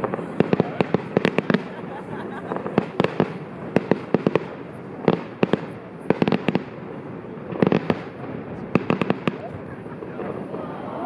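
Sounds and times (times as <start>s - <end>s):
firework bangs: 0.0s - 11.0s.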